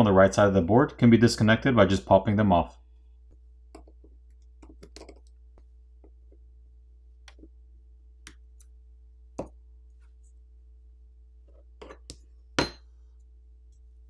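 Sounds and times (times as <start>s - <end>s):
small tools clicking and tapping: 3.8s - 5.4s.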